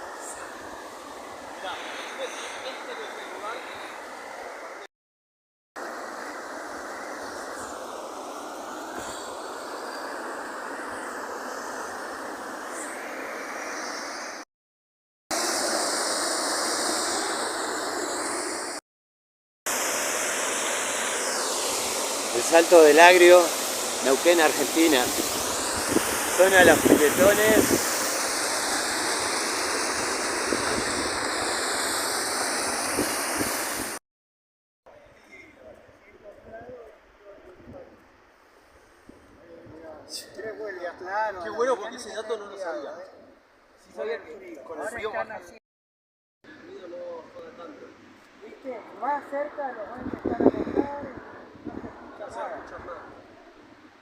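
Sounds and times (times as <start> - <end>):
waterfall rushing: 19.7 - 34.0.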